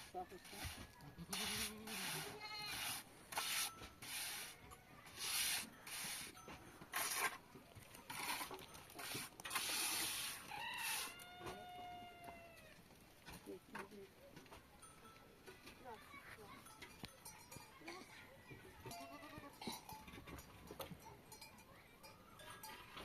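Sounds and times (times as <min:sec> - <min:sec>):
rough scraping strokes: 0:00.0 - 0:11.2
goats bleating: 0:01.2 - 0:03.0, 0:18.9 - 0:19.8.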